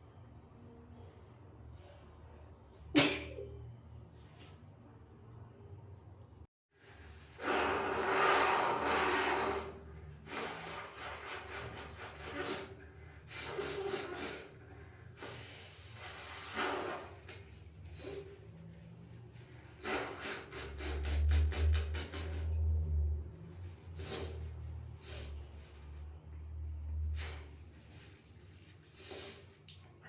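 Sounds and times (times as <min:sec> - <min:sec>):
person blowing nose: 0:07.3 - 0:17.4, 0:19.7 - 0:22.5.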